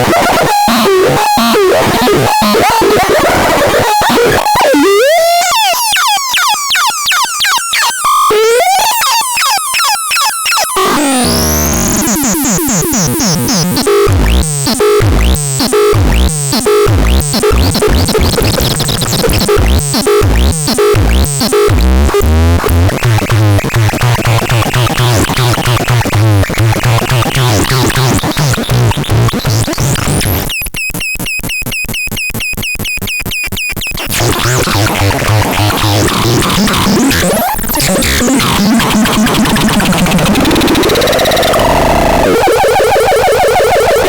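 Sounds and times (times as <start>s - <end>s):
synthesizer warbling sweeps: 0.6s - 21.2s
pulsing synth over bass note: 10.7s - 28.2s.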